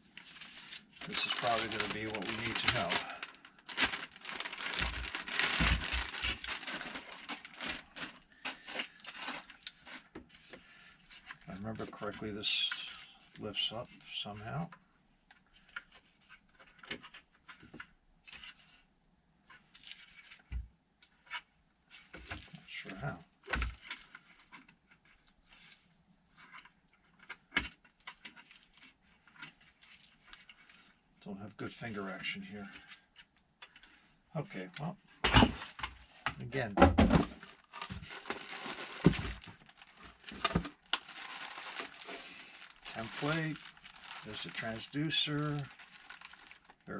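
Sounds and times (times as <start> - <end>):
packaging and papers rustling: 0.0 - 13.7, 37.0 - 46.9
hands fiddling with equipment: 14.7 - 31.0.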